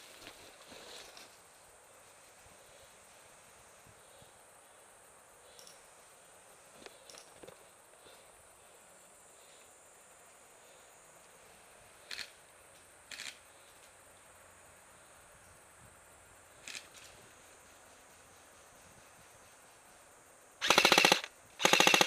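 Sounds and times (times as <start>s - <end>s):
insects chirring: 0.0s - 22.0s
outdoor hiss: 0.0s - 22.0s
short sharp bursts: 20.6s - 22.0s.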